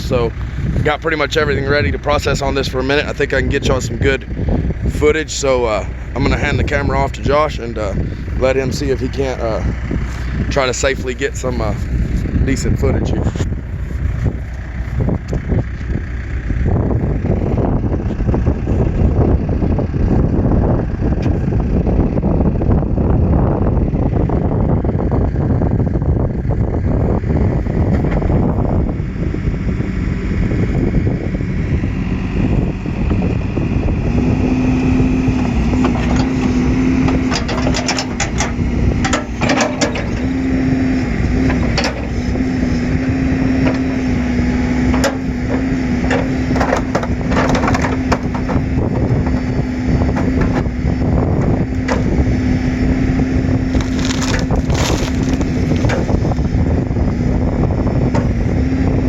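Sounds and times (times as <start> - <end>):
heavy machine engine running: 0.0 - 59.0.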